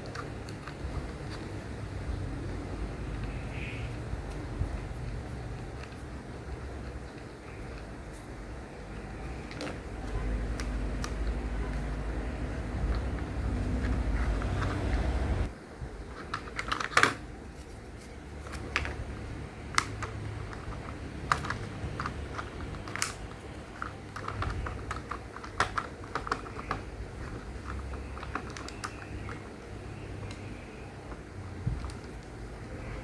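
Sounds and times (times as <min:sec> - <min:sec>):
plastic pieces clicking together: 0:19.7 - 0:29.6.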